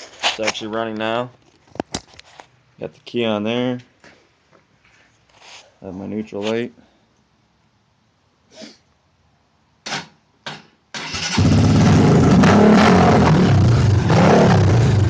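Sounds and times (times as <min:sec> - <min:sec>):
dirt bike engine starting and running: 0:11.0 - 0:15.0.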